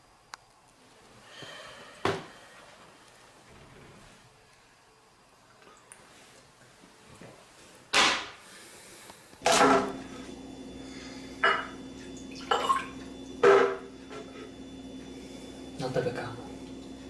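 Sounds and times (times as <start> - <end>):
low steady hum: 9.4 - 17.0
glassware clinking: 11.4 - 11.8, 12.4 - 13.8.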